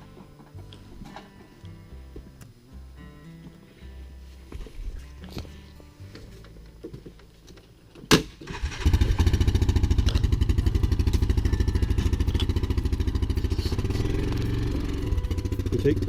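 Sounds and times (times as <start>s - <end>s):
vehicle engine starting and idling: 8.4s - 16.0s.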